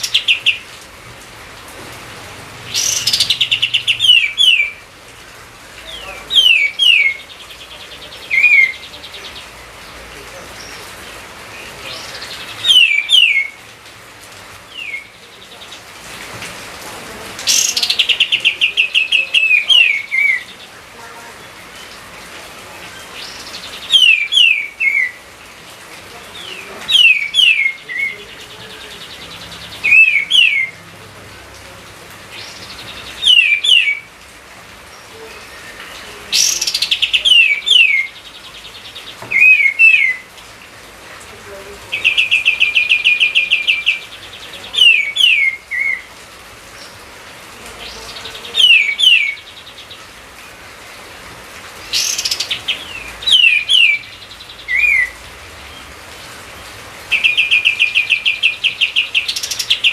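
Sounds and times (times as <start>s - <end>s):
bird trill: 2.7s - 4.8s, 12.0s - 13.6s, 32.4s - 34.0s
songbird whistling: 12.6s - 13.6s, 33.2s - 34.1s.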